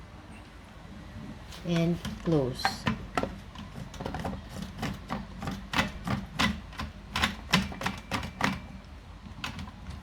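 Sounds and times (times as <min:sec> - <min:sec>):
plastic clicks and knocks: 0:02.0 - 0:08.7.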